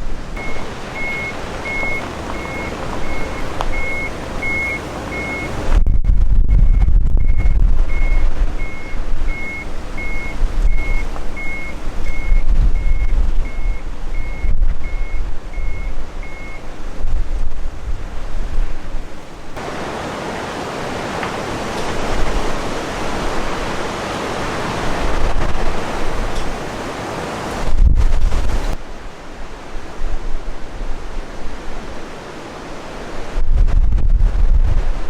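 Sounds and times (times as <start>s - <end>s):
surf rushing: 0.0s - 5.8s, 7.5s - 14.2s, 18.8s - 33.5s
wind rumbling on microphone: 0.0s - 35.0s.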